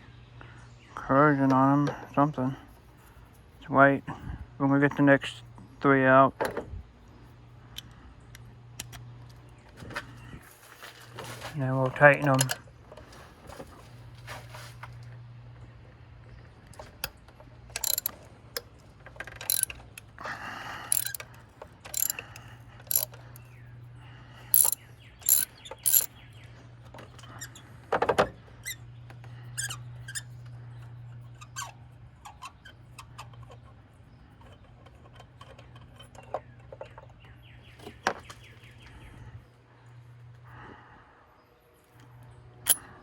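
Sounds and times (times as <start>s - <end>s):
metallic clicks of hand tools: 17.8s - 18.2s, 19.3s - 20.1s, 20.9s - 23.4s, 24.5s - 26.1s, 42.7s - 42.9s.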